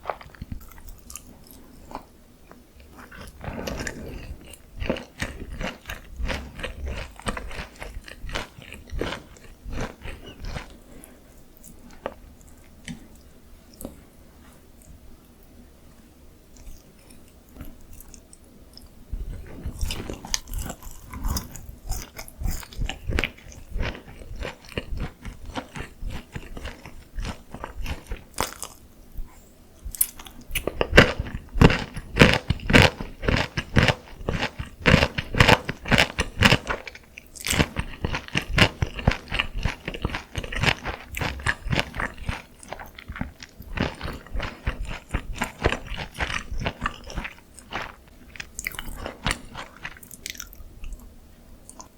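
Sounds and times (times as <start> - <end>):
crunching fried chicken: 2.8 - 11.2, 19.3 - 28.8, 29.9 - 51.0.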